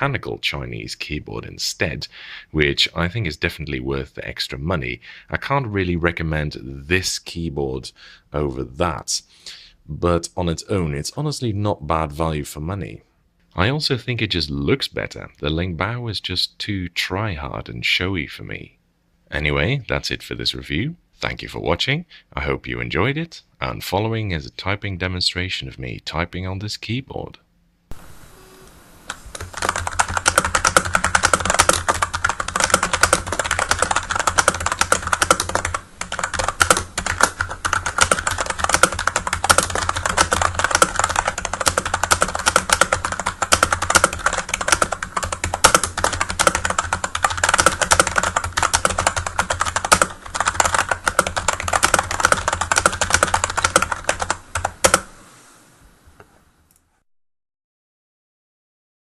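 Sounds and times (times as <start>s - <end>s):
fast keyboard typing: 29.3s - 55.1s.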